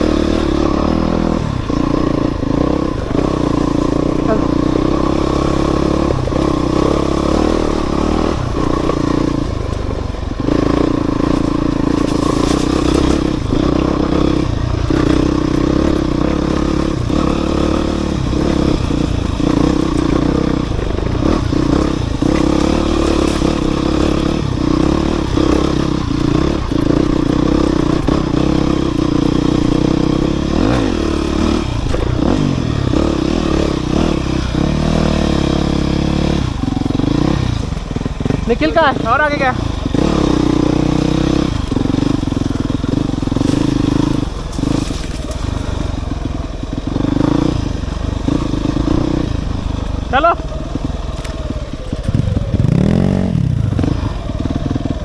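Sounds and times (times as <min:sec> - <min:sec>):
dirt bike engine revving: 0:00.0 - 0:55.0
bike knocks and rattles: 0:08.3 - 0:34.7, 0:39.8 - 0:47.5.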